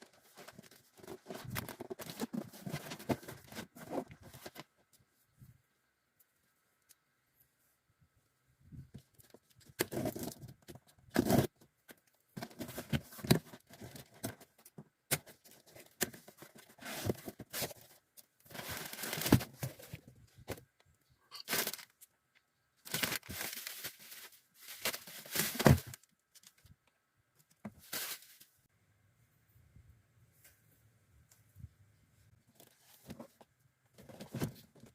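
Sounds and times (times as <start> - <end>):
packing material tearing and crinkling: 22.8 - 26.1.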